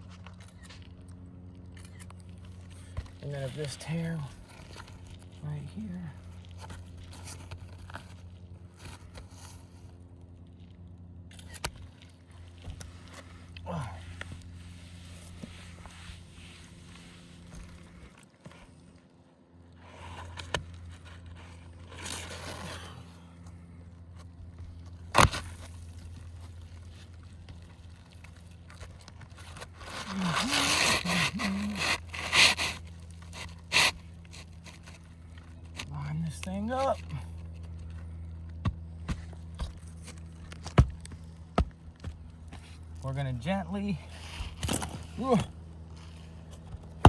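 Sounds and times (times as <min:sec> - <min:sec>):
shingles scraping and rustling: 0:24.2 - 0:38.2.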